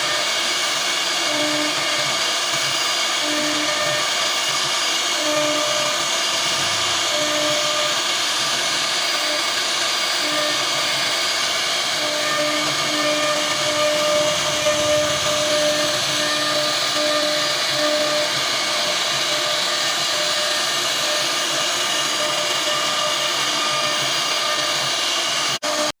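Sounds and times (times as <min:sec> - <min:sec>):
router spindle cutting wood: 0:00.0 - 0:25.9
low pulsing hum: 0:10.8 - 0:18.1.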